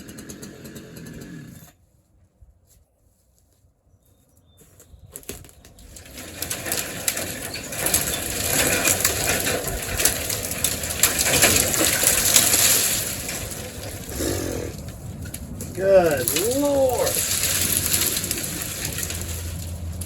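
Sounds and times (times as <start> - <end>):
tree falling through branches: 5.1 - 20.0.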